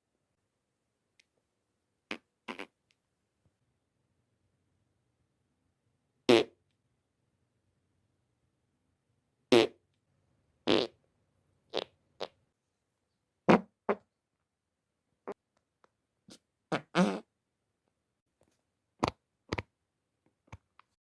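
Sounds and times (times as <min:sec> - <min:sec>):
short fart sounds: 0:02.1 - 0:02.7, 0:06.3 - 0:06.5, 0:09.5 - 0:09.8, 0:10.7 - 0:10.9, 0:13.5 - 0:14.0, 0:16.7 - 0:17.3.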